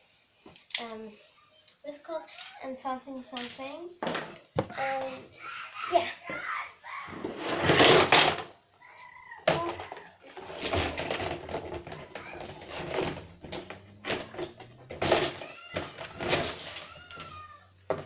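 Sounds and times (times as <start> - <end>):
plastic toys clattering: 3.3 - 5.2, 7.1 - 8.6, 9.4 - 18.0.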